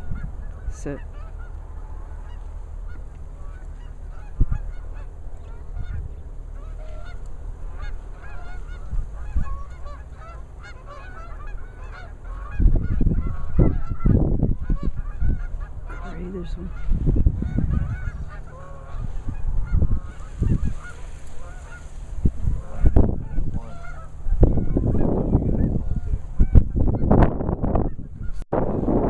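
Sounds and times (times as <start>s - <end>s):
geese honking: 0.0s - 28.4s
low rumbling: 0.0s - 29.0s.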